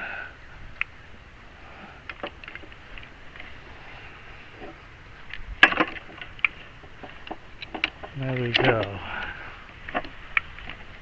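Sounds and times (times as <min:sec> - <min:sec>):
mechanism clicks and knocks: 0:05.3 - 0:09.0.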